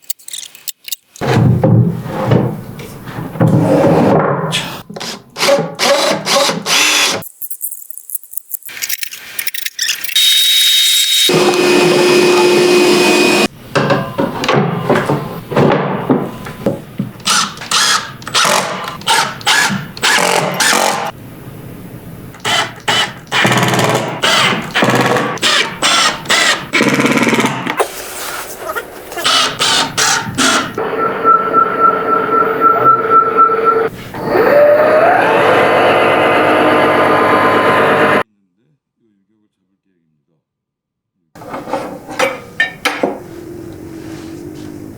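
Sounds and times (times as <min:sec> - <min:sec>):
power tool motor whine: 0:10.2 - 0:13.5, 0:34.2 - 0:38.2.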